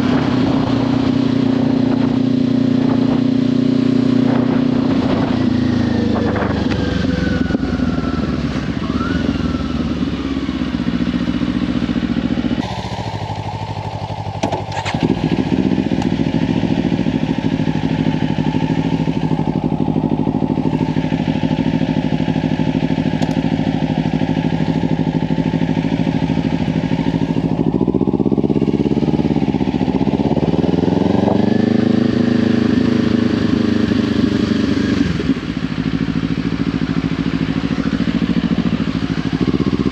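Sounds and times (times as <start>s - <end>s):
wind noise on microphone: 0.0s - 7.8s
motorcycle engine cruising: 0.0s - 39.9s.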